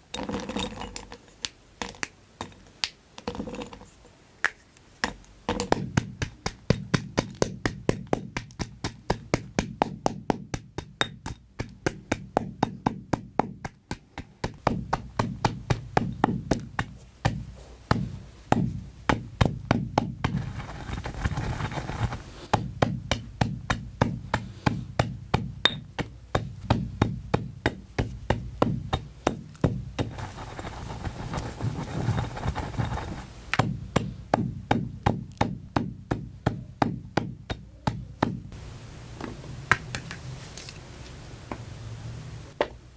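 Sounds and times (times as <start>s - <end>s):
gritty crumbling noise: 20.3s - 22.4s, 29.5s - 33.7s
chalk being crushed: 20.3s - 22.6s, 29.5s - 33.7s.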